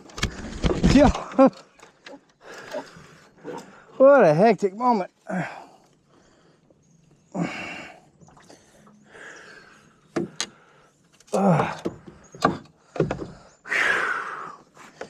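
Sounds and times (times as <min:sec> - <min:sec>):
man breathing hard: 0:07.4 - 0:12.2.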